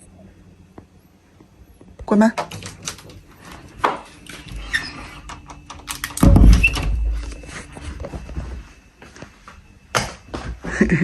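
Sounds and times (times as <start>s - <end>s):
door shutting with heavy thud: 6.1s - 7.3s.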